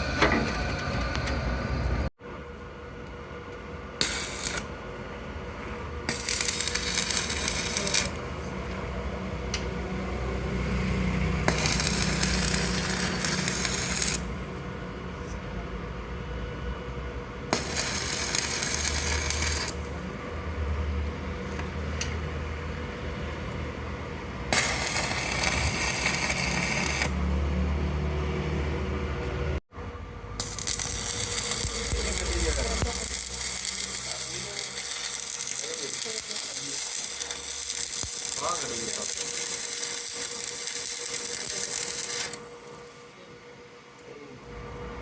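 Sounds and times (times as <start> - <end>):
harsh hissing bursts: 4.0 - 4.7, 6.1 - 8.2, 11.5 - 14.4, 17.6 - 19.9, 24.5 - 27.2, 30.4 - 43.0.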